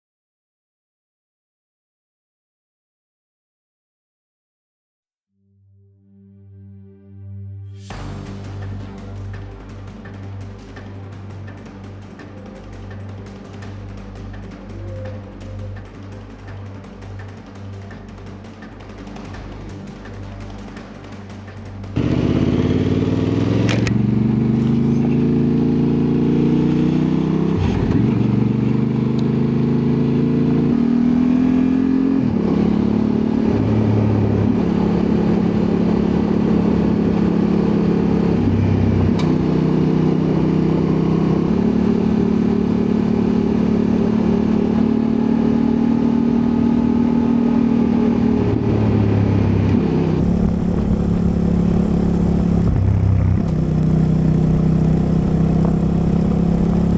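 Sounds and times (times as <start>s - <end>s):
motorcycle engine under load: 21.8s - 30.3s, 50.2s - 56.9s.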